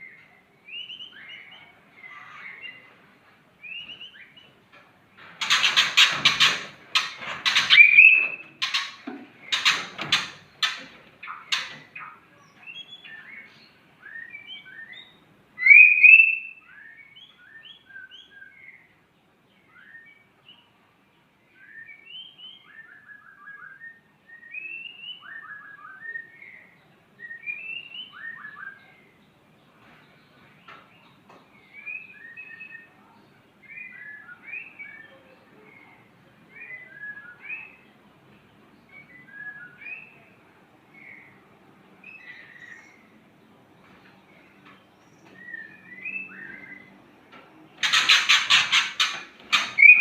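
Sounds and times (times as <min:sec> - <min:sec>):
bird whistled phrases and trills: 0:00.0 - 0:02.9, 0:07.6 - 0:08.8, 0:11.2 - 0:18.9, 0:21.6 - 0:29.1, 0:31.7 - 0:37.9, 0:39.0 - 0:40.4, 0:45.4 - 0:47.0, 0:49.5 - 0:50.0
bird harsh rasping calls: 0:47.8 - 0:50.0.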